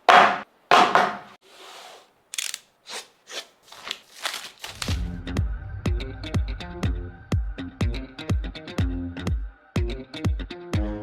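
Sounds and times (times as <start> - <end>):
soft scrape: 1.4 - 2.1
crinkling and tearing: 2.3 - 5.1
packaging tearing rustle: 2.3 - 5.1.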